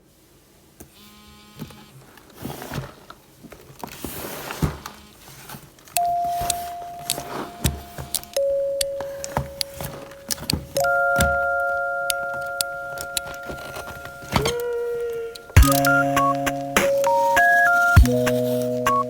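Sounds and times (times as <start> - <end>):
packaging rustling and crinkling: 2.2 - 8.3, 9.0 - 15.6
electronic background music: 6.0 - 19.0.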